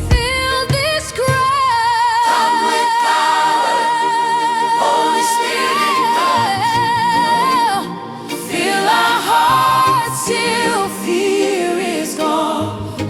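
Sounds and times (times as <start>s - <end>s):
reggae drums and bass: 0.0s - 1.6s
person singing with vibrato: 0.0s - 13.0s.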